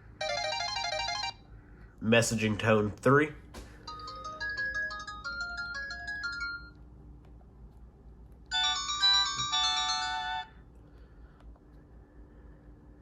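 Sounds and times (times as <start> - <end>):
chiming phone alert: 0.2 - 1.4, 3.9 - 6.7, 8.5 - 10.5.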